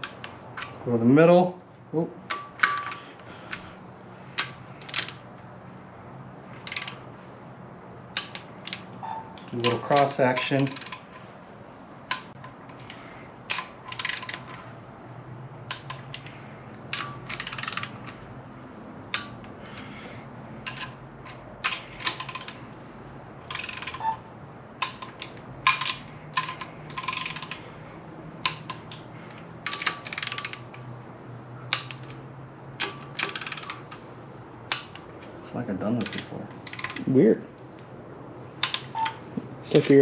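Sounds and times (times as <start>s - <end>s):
ratchet wrench clicking: 4.4s - 5.2s, 6.6s - 7.0s, 8.1s - 11.2s, 12.1s - 14.7s, 15.6s - 18.2s, 19.1s - 19.9s, 20.6s - 22.6s, 23.4s - 24.2s, 24.8s - 27.7s, 28.4s - 30.9s, 32.8s - 34.0s, 34.7s - 35.1s, 36.0s - 37.1s, 38.6s - 40.0s.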